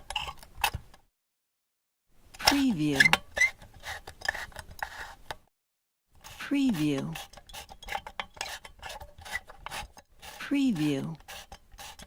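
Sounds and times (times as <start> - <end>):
clicks and creaks of twisting object: 0.0 - 1.1, 2.4 - 5.5, 6.2 - 10.5, 11.1 - 12.0.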